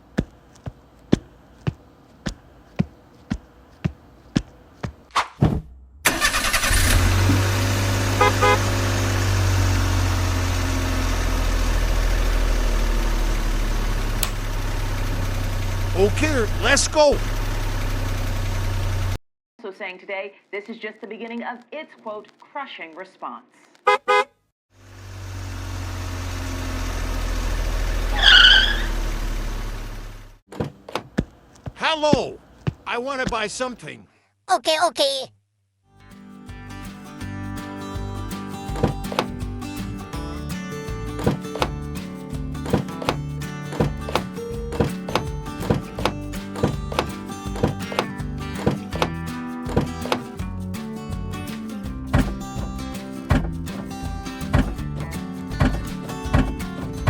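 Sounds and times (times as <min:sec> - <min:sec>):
small engine idling: 0:06.1 - 0:19.2, 0:24.8 - 0:30.4
high falling squeal: 0:28.1 - 0:29.0.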